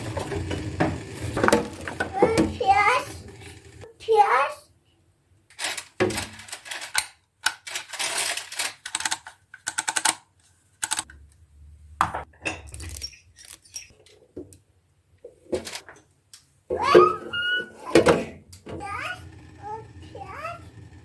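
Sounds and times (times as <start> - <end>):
kitchen containers clicking and scraping: 0.0 - 3.9, 5.6 - 9.4.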